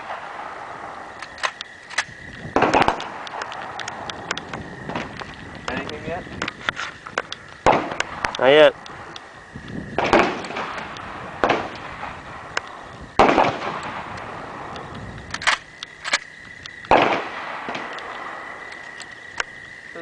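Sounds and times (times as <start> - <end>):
shotgun shots with echo: 2.6 - 3.4, 7.6 - 8.3, 10.0 - 12.2, 13.2 - 14.1, 16.9 - 17.9.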